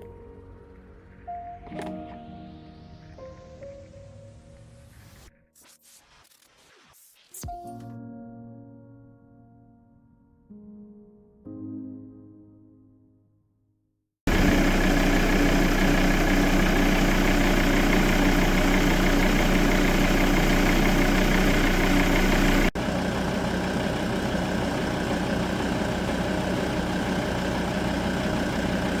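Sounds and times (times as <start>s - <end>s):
diesel engine idling: 14.3s - 29.0s.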